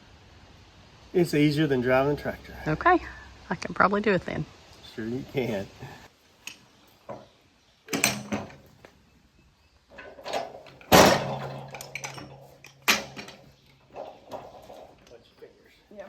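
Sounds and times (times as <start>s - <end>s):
knocks and clatters: 7.9s - 8.9s, 9.9s - 15.2s
low steady hum: 7.9s - 16.0s.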